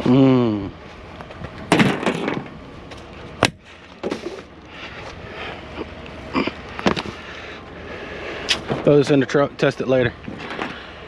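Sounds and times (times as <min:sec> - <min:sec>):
scrap items knocking and clattering: 0:01.6 - 0:02.5.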